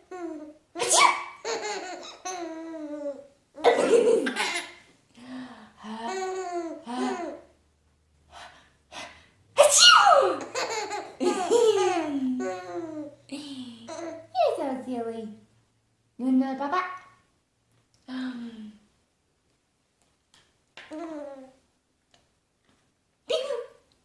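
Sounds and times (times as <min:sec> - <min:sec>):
baby giggling: 0:00.0 - 0:04.8, 0:06.0 - 0:07.5, 0:10.2 - 0:13.2, 0:13.9 - 0:14.3
loud sneezes: 0:00.8 - 0:01.3, 0:09.6 - 0:10.4.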